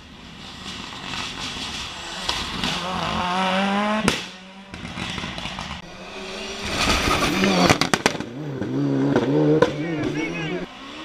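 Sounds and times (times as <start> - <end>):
race car engine revving: 1.0 - 11.0.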